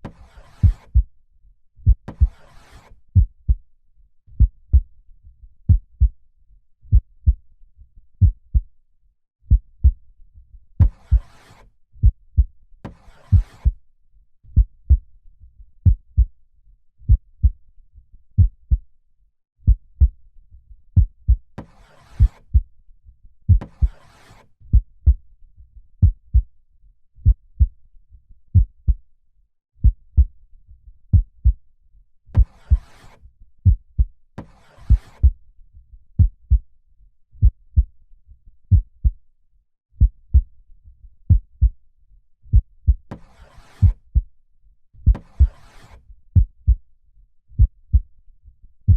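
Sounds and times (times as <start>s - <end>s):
heartbeat thumps: 1.8s - 2.4s, 4.4s - 4.8s, 5.7s - 6.1s, 6.9s - 7.4s, 8.2s - 8.7s, 10.8s - 11.2s, 14.6s - 15.0s, 15.8s - 16.3s, 17.1s - 17.6s, 18.4s - 18.8s, 24.7s - 25.2s, 26.0s - 26.4s, 27.2s - 27.7s, 28.6s - 29.0s, 29.8s - 30.3s, 36.2s - 36.6s, 38.7s - 39.1s, 40.0s - 40.5s, 41.3s - 41.8s, 42.5s - 43.0s, 46.4s - 46.8s, 47.6s - 48.1s.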